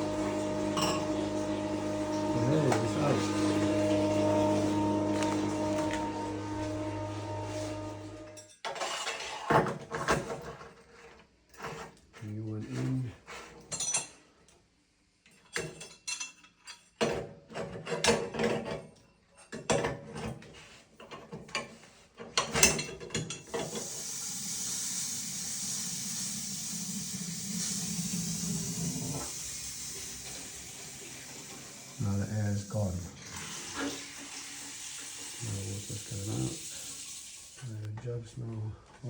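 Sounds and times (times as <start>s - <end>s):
air hissing from plumbing: 0.0s - 8.3s, 23.5s - 37.9s
knocks and clatter of hand work: 17.0s - 23.5s.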